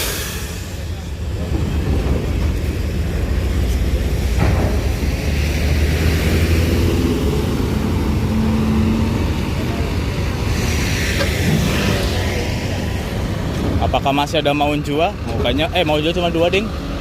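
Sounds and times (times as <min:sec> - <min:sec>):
diesel engine rumbling: 0:00.0 - 0:17.0.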